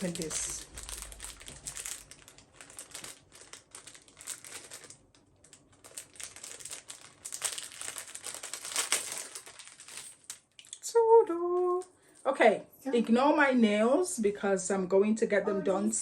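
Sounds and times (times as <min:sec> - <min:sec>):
packaging crinkling and rustling: 0:00.0 - 0:10.8.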